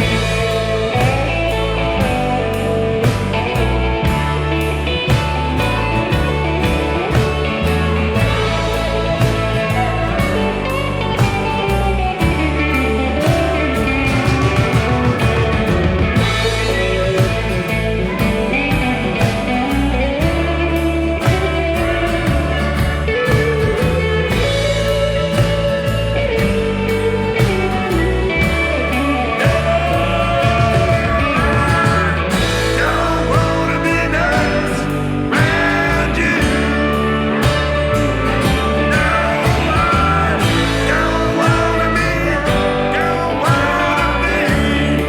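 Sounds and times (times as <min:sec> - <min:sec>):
drums keeping a steady beat: 0:00.0 - 0:45.0
gliding lead guitar line: 0:00.0 - 0:45.0
upright bass: 0:00.0 - 0:45.0.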